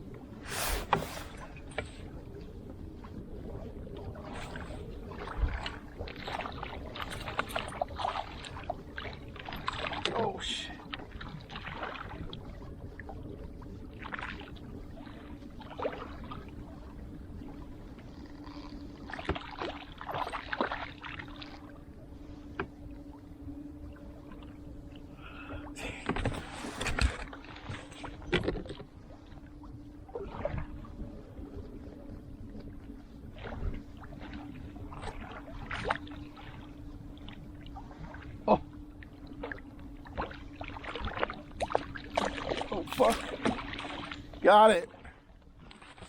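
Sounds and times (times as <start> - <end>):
steady low hum: 0.0 - 46.0
water lapping against kayak hull: 0.0 - 46.0
water splashing: 39.3 - 45.1.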